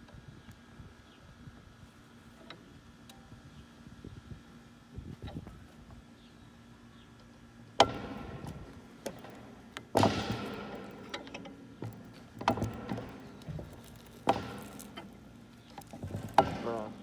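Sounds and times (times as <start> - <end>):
metal can cracking in a vise: 12.5 - 17.0.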